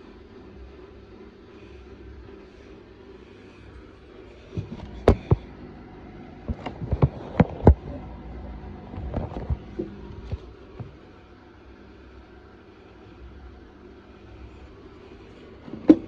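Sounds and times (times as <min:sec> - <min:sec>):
washing machine humming: 0:00.0 - 0:16.0
drum knocking and thudding: 0:04.5 - 0:05.5.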